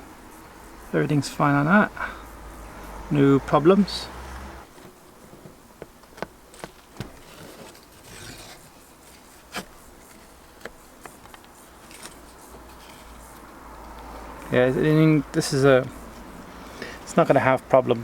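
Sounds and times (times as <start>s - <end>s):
faint scraping: 7.1s - 13.3s.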